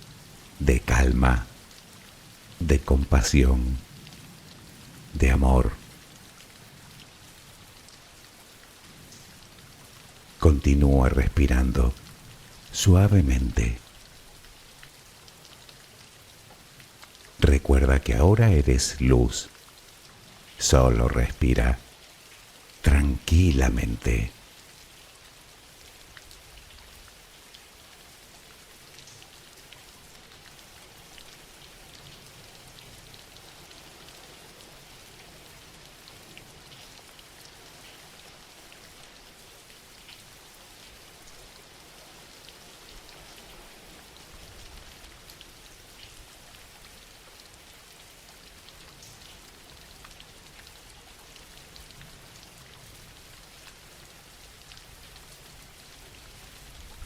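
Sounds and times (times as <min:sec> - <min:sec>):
gentle rain hiss: 0:00.0 - 0:57.0
raindrop ticks: 0:28.9 - 0:31.4.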